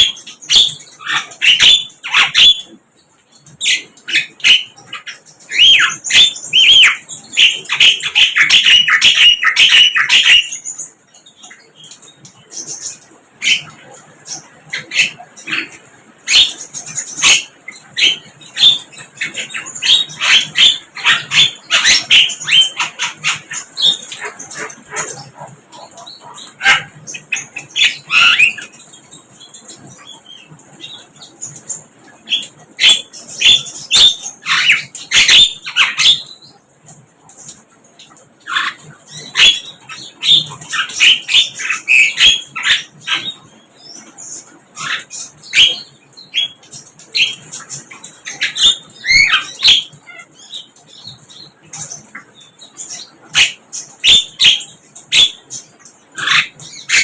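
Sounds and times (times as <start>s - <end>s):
bird chirping and whistling: 0.0s - 2.7s, 3.6s - 10.5s, 16.3s - 16.6s, 17.2s - 25.2s, 26.0s - 28.7s, 39.4s - 43.4s, 44.9s - 46.6s, 48.3s - 49.9s, 53.4s - 55.4s.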